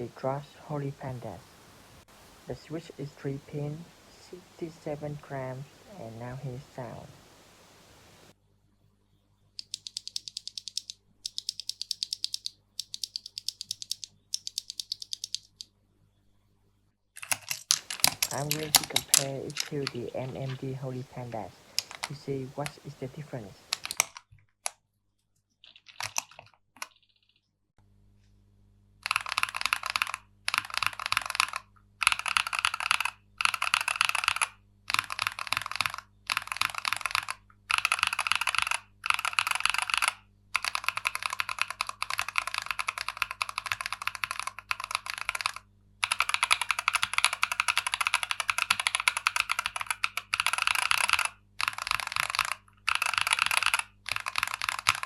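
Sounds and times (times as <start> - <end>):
mechanical keyboard typing: 9.6 - 15.7, 17.2 - 24.3, 25.8 - 26.9, 29.0 - 55.0.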